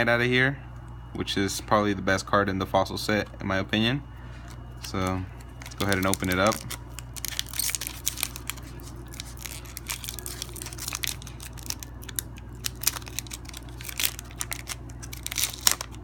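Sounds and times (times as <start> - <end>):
low steady hum: 0.0 - 16.0
foil wrapper crinkling: 4.4 - 16.0.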